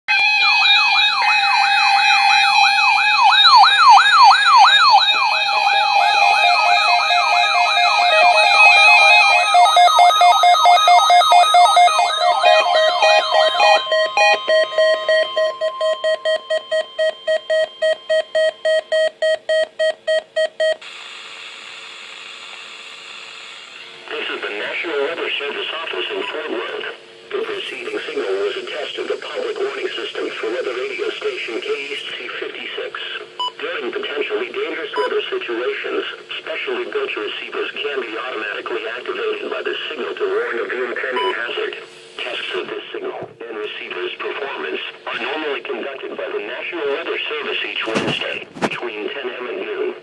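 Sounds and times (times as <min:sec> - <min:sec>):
electronic sirens rising and falling: 0:00.1 - 0:19.1
pulsing alarm tone: 0:00.1 - 0:19.6
faint steady hum: 0:00.8 - 0:20.8.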